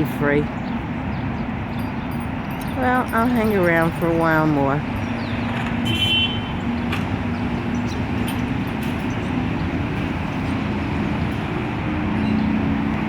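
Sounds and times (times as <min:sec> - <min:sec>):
road traffic rumble: 0:00.0 - 0:13.0.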